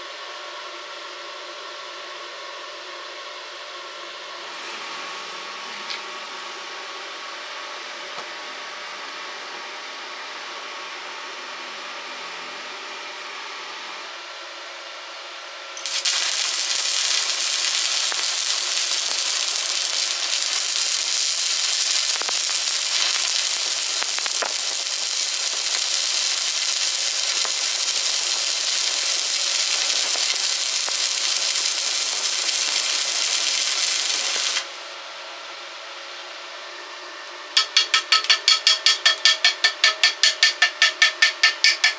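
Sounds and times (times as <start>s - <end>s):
welding arc crackling hiss: 15.8s - 35.1s, 37.6s - 41.9s.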